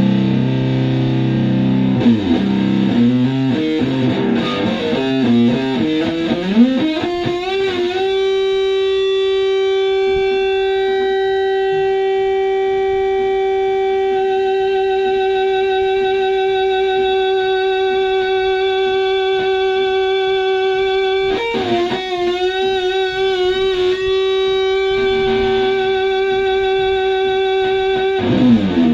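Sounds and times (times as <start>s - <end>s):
fuzz electric guitar: 0.0s - 28.9s.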